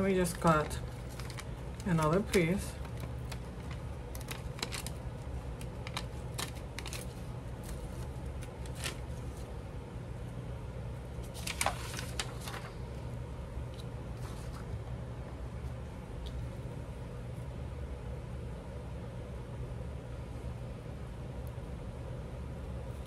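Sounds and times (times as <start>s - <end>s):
paper rustling: 0.0s - 9.6s, 11.2s - 13.0s, 13.7s - 14.8s
scissors snipping paper: 0.2s - 9.1s.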